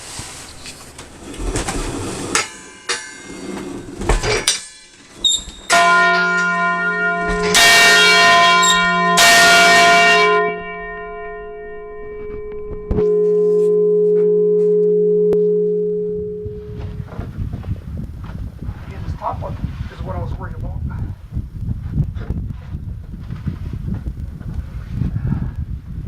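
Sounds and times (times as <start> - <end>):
bell wheel knocking and rattling: 5.6 - 13.5
large church bell ringing: 5.7 - 17.1.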